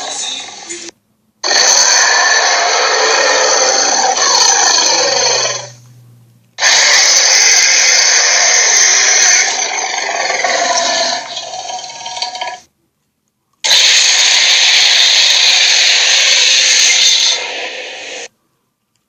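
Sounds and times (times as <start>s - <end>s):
harsh raspy dinosaur roars: 1.4s - 5.8s, 6.6s - 12.6s.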